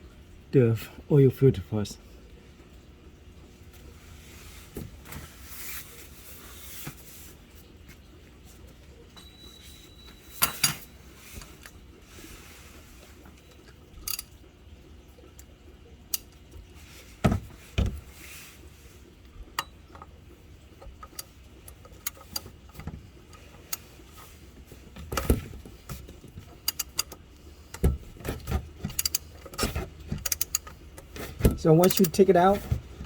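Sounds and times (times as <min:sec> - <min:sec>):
hand tools clicking on metal: 0:26.7 - 0:27.8, 0:28.9 - 0:30.8, 0:31.6 - 0:32.4.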